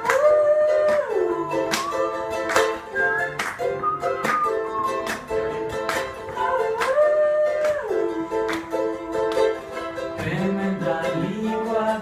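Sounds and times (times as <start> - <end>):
plucked string instrument strumming: 0.0 - 12.0
sliding melody line: 0.1 - 12.0.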